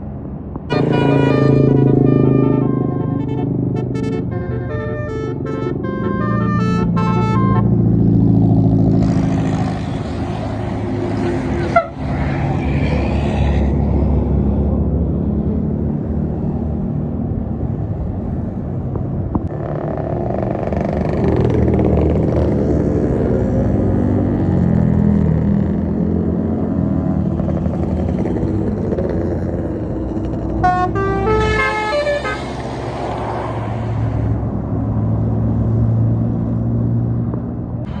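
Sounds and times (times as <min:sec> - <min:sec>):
bus engine rumble: 0:00.0 - 0:38.0
rushing tyre and air noise: 0:00.0 - 0:38.0
musical bus horn: 0:00.7 - 0:08.0, 0:11.2 - 0:12.0, 0:30.6 - 0:32.8.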